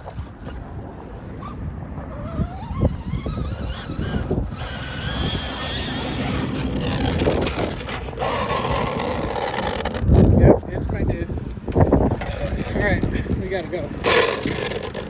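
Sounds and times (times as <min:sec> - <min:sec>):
electric motor whining: 0:00.0 - 0:10.4
gears knocking: 0:03.3 - 0:10.4.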